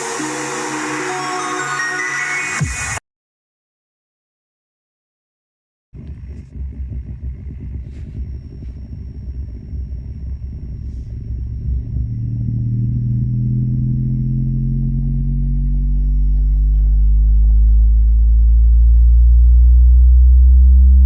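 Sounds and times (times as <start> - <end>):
bass-heavy music from speaker: 6.0 - 21.0.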